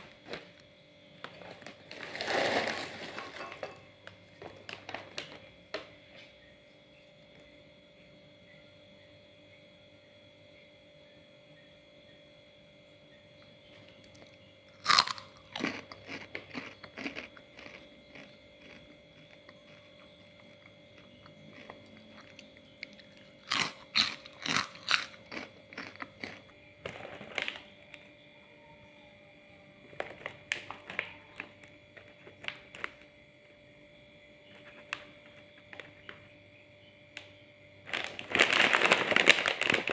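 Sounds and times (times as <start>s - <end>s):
faint steady hum: 0.0s - 39.9s
crunchy snack being chewed: 1.2s - 6.3s, 13.7s - 28.1s, 29.8s - 33.1s, 37.9s - 39.9s.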